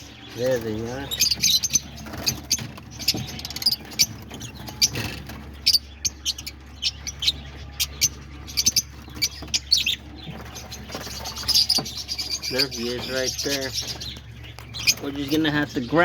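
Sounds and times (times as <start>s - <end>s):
birds chirping and squeaking: 0.0s - 16.0s.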